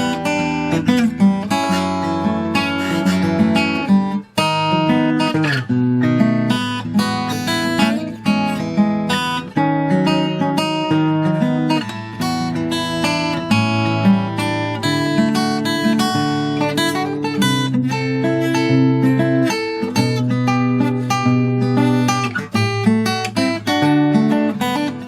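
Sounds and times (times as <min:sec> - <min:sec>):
acoustic guitar playing: 0:00.0 - 0:25.0.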